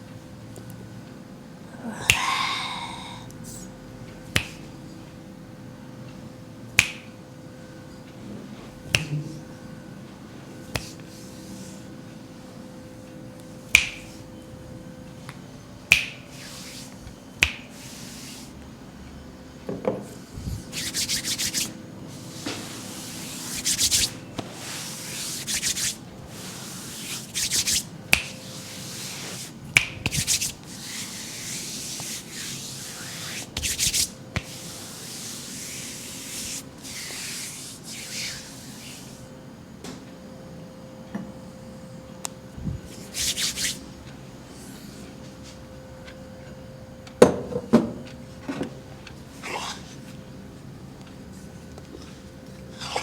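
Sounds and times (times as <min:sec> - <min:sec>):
finger snaps: 0:02.0 - 0:02.6, 0:04.3 - 0:04.8, 0:06.8 - 0:07.2, 0:08.9 - 0:09.2, 0:10.7 - 0:11.1, 0:13.7 - 0:14.2, 0:15.3 - 0:16.3, 0:17.4 - 0:17.8, 0:27.6 - 0:28.4, 0:29.7 - 0:30.6, 0:33.6 - 0:34.6
hands rubbing skin: 0:10.7 - 0:11.8, 0:15.9 - 0:18.6, 0:20.5 - 0:39.2, 0:42.8 - 0:43.8.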